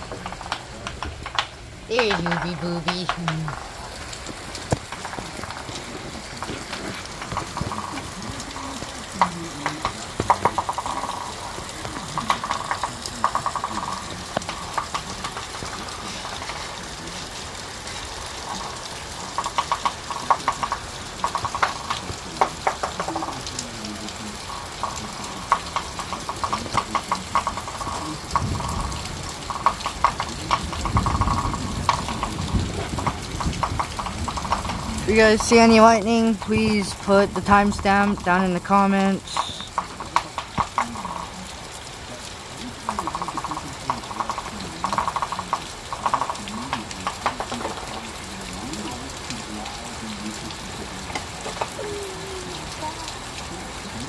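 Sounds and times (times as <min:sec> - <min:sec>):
heavy rain falling: 0:00.0 - 0:54.0
low thunder rumble: 0:27.8 - 0:35.5.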